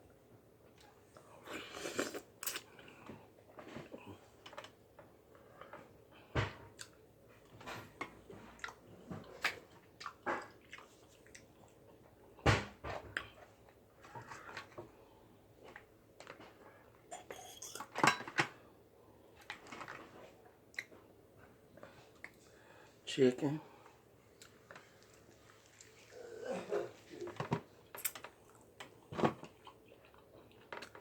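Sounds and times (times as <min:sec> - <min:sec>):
chewing: 0:08.5 - 0:12.0, 0:24.4 - 0:26.4, 0:27.9 - 0:31.0.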